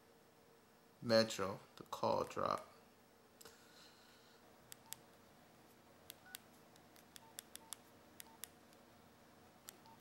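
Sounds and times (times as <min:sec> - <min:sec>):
phone keypad button clicks: 0:07.1 - 0:08.5
short keypad beeps: 0:07.2 - 0:08.5.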